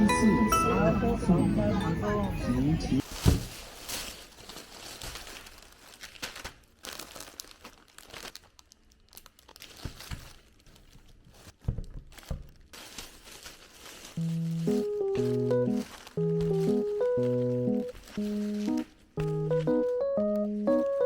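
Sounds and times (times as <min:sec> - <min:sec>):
music: 0:00.0 - 0:03.0, 0:14.2 - 0:21.0
crinkling and rustling: 0:03.0 - 0:21.0.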